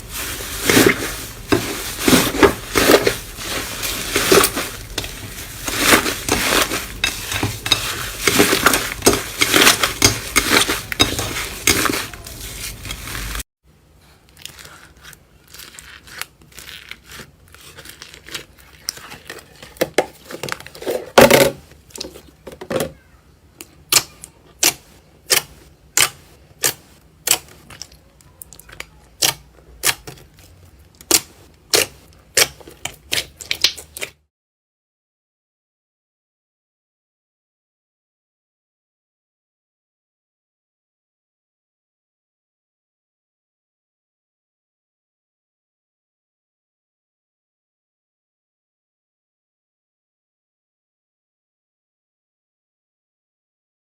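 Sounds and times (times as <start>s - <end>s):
slime crackling and crunching: 0.0s - 13.4s, 14.3s - 19.8s.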